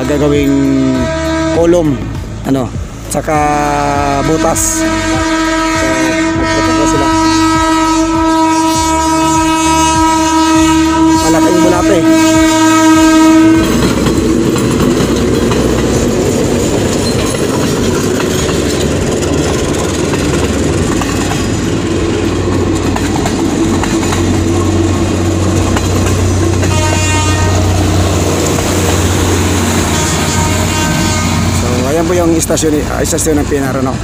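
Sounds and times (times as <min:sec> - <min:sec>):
train horn: 0:00.8 - 0:02.0, 0:04.1 - 0:13.9, 0:26.6 - 0:28.2, 0:29.2 - 0:32.1
train cars clattering on rails: 0:02.1 - 0:34.0.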